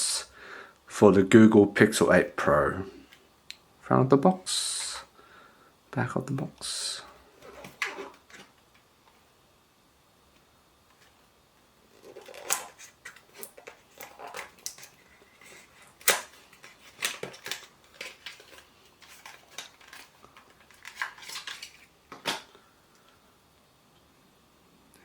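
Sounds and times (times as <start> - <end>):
packaging rustling and scraping: 7.2 - 8.8, 10.9 - 22.4.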